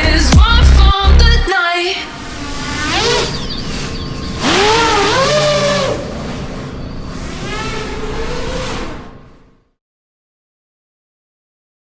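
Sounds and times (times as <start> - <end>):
drone motors whining: 2.0 - 9.7.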